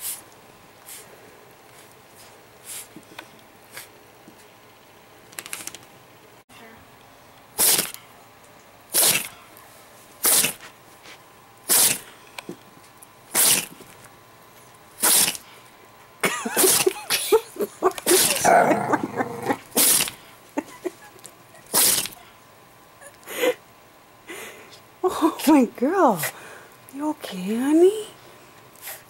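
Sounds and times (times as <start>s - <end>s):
dog sneezing: 7.6s - 8.0s, 8.9s - 9.4s, 10.2s - 10.7s, 11.7s - 12.1s, 13.3s - 13.8s, 15.0s - 15.5s, 16.5s - 17.4s, 18.1s - 18.6s, 19.7s - 20.2s, 21.6s - 22.2s.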